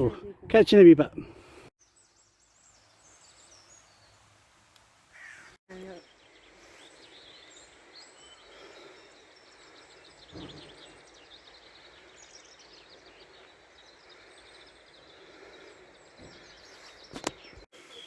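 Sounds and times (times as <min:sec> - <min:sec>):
birds singing: 0:01.4 - 0:04.2, 0:05.1 - 0:18.0
outdoor hiss: 0:02.1 - 0:14.2, 0:16.6 - 0:18.0.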